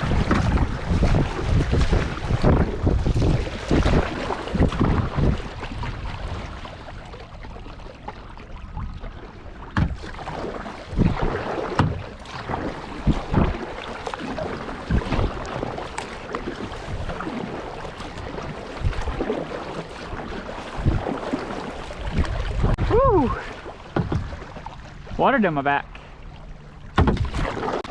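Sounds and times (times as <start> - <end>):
paddle splashing in water: 0.0 - 27.9
rushing water: 0.0 - 27.9
wind: 0.0 - 27.9.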